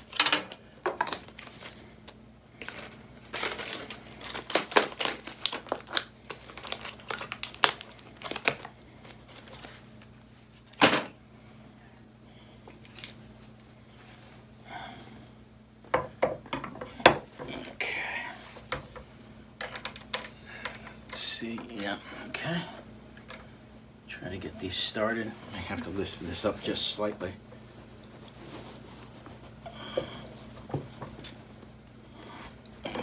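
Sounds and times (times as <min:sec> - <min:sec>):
chair parts and screws rattling: 0:19.6 - 0:21.0.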